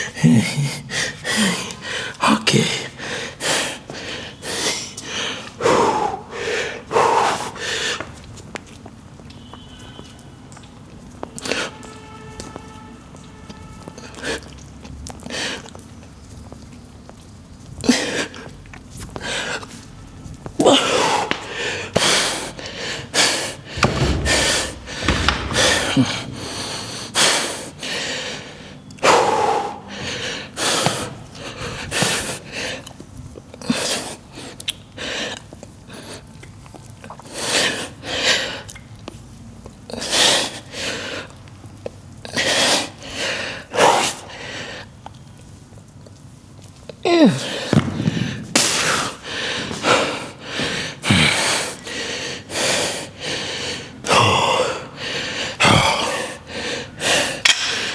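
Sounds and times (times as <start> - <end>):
man breathing heavily: 2.9 - 8.1, 20.6 - 32.8, 49.1 - 57.9.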